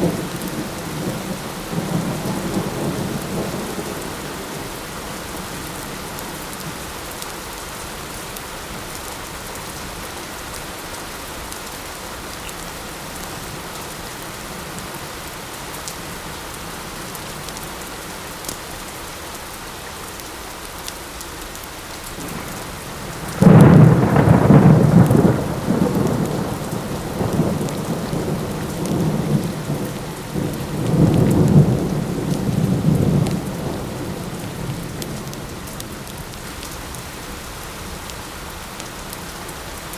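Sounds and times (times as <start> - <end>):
thunderclap and rumbling thunder: 0.0 - 5.5, 22.2 - 36.3
light rain: 0.0 - 39.9.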